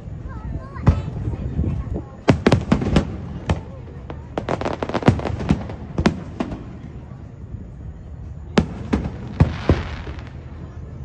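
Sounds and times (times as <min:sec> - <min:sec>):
fireworks banging: 0:02.2 - 0:07.4, 0:08.5 - 0:11.0.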